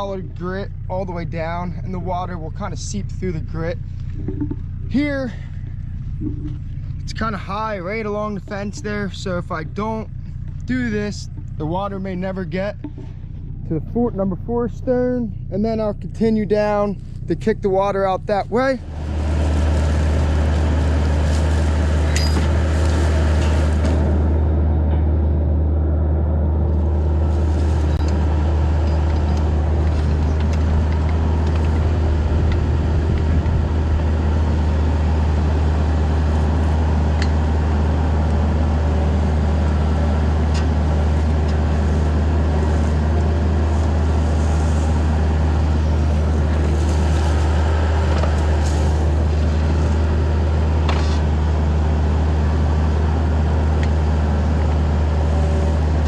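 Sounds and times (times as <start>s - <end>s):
excavator diesel engine humming: 0.0s - 56.0s.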